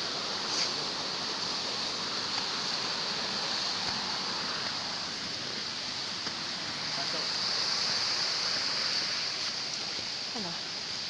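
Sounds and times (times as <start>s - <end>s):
high hiss: 0.0s - 11.0s
rushing outdoor noise: 0.0s - 11.0s.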